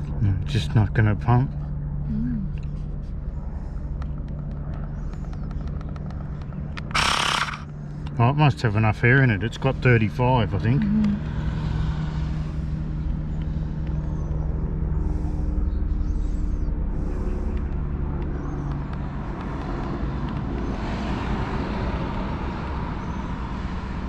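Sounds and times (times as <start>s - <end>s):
road traffic: 6.7s - 8.2s, 10.0s - 24.0s
engine idling: 6.9s - 7.6s.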